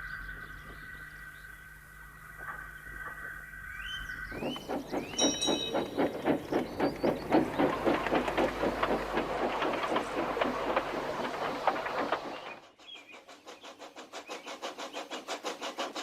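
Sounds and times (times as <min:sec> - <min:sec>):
steam locomotive chuffing: 0:04.3 - 0:16.0.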